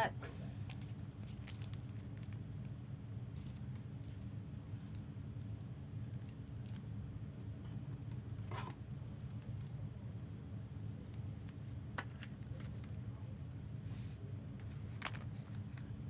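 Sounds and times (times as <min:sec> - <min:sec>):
steady low hum: 0:00.0 - 0:01.2.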